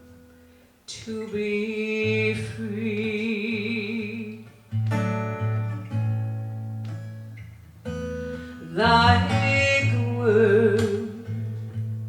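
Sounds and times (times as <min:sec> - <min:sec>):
acoustic guitar strumming: 0:00.0 - 0:12.0
woman singing with vibrato: 0:00.9 - 0:04.5, 0:08.6 - 0:11.5.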